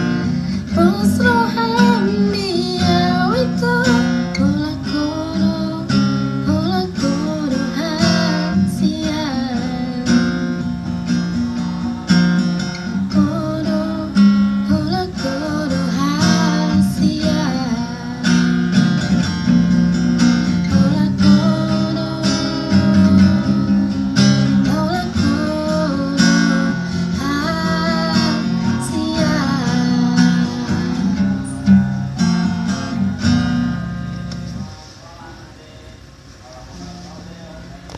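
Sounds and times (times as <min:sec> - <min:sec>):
woman singing: 0:00.0 - 0:18.8, 0:20.4 - 0:31.8
strummed acoustic guitar: 0:00.0 - 0:35.0.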